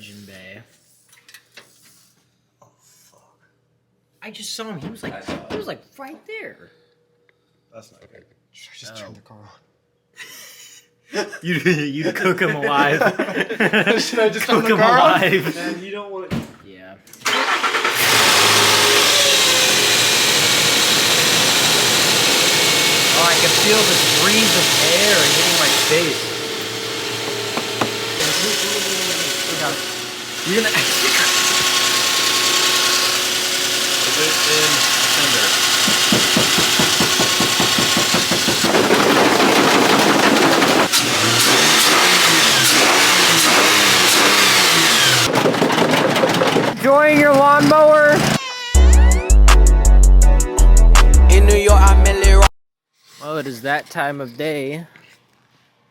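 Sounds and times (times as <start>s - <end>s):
car starter cranking: 17.2s - 48.4s
car engine running: 17.3s - 46.8s.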